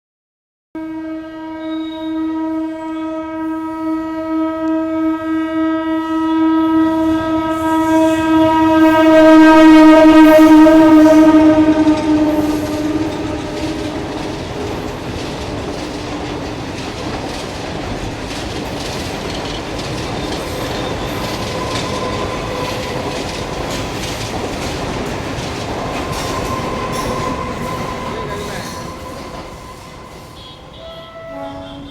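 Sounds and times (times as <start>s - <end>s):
train horn blast: 0.8s - 16.5s, 20.4s - 24.0s, 25.2s - 31.9s
train rumbling: 0.9s - 31.9s
wheels clicking over rail joints: 12.8s - 27.8s.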